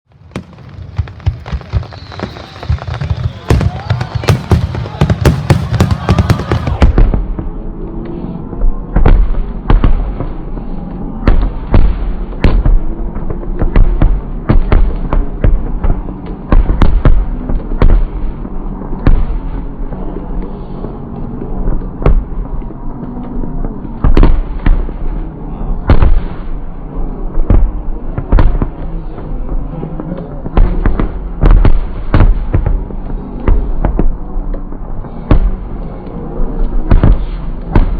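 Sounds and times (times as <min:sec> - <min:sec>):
fireworks bangs: 0:00.1 - 0:07.5, 0:36.8 - 0:37.9
steady low rumble: 0:00.1 - 0:37.9.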